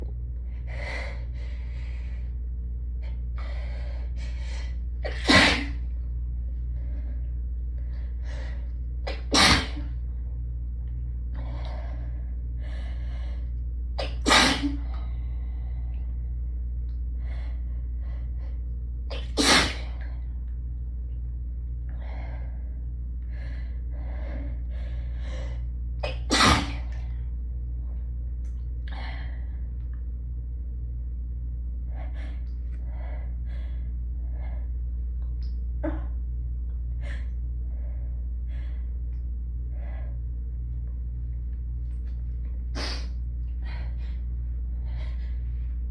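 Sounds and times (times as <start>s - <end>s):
air conditioner hum: 0.0s - 45.9s
person sneezing: 5.1s - 5.8s, 9.1s - 9.9s, 14.0s - 14.8s, 19.1s - 19.9s, 26.1s - 26.9s, 42.8s - 43.1s.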